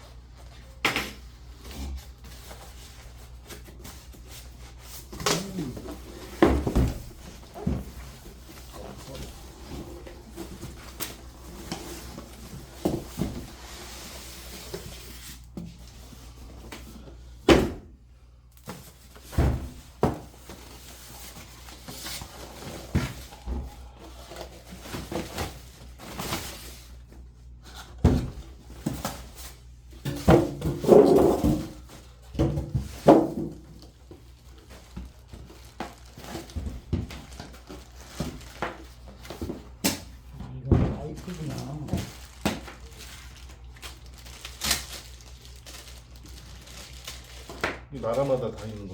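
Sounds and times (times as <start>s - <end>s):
cardboard packaging handled: 27.6s - 48.9s.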